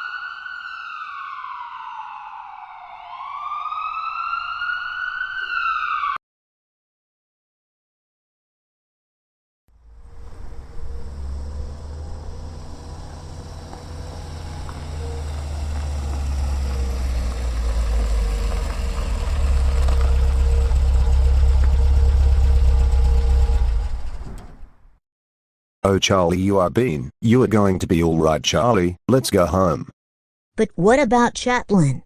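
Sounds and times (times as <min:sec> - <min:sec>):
vehicle engine rumbling: 0:09.7 - 0:25.0.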